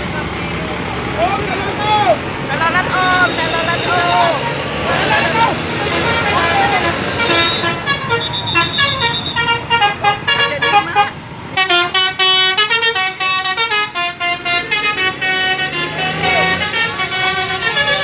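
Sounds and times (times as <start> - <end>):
musical bus horn playing a tune: 5.9 - 18.0.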